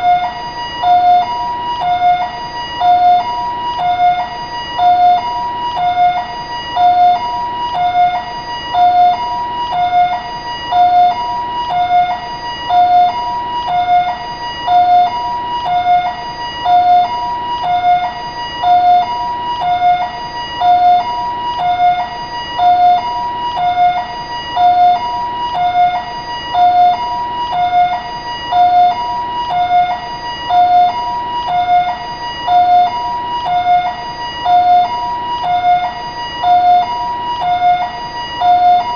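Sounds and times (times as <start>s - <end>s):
two-tone ambulance siren: 0.0s - 38.9s.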